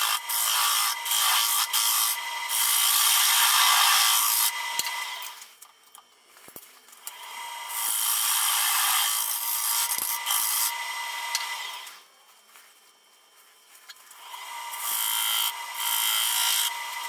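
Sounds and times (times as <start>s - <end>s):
lathe gouge cutting wood: 0.0s - 5.3s, 7.4s - 11.8s, 14.4s - 17.0s
faint steady whine: 9.2s - 17.0s.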